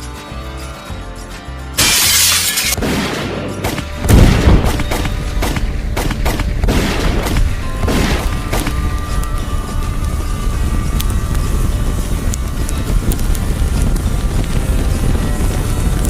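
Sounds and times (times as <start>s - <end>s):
background music: 0.0s - 16.0s
heavy boom: 1.8s - 8.8s
sudden crashing burst: 1.8s - 8.8s.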